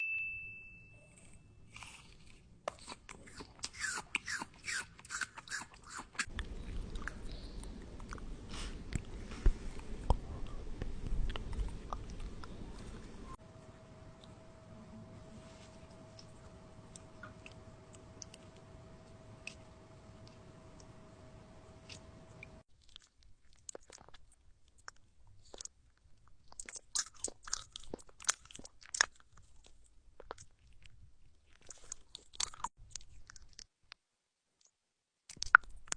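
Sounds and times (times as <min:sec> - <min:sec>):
baby chewing and smacking: 0:01.7 - 0:13.2, 0:22.7 - 0:33.7.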